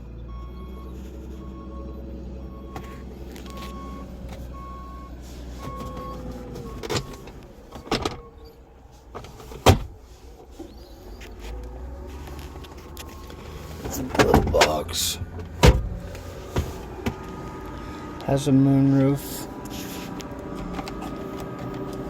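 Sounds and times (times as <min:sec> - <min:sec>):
car warning chime beeping: 0:00.0 - 0:07.4.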